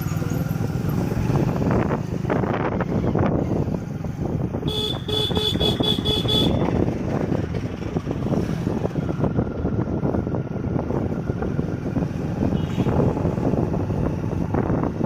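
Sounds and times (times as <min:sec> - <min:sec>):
wind and road noise: 0:00.0 - 0:15.0
vehicle horn short beeps: 0:04.7 - 0:06.6.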